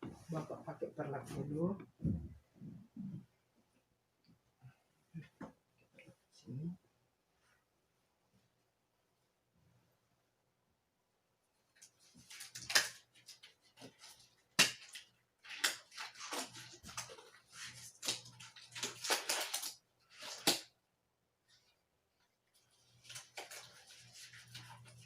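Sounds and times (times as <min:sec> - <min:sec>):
plastic sheet crinkling: 0:11.8 - 0:20.7, 0:22.5 - 0:25.0.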